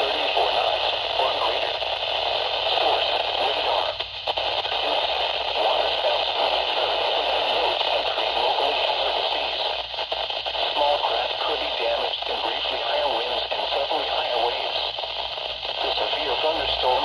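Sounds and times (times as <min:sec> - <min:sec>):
faint radio voice: 0:00.0 - 0:17.0
radio static hiss and crackle: 0:00.0 - 0:17.0.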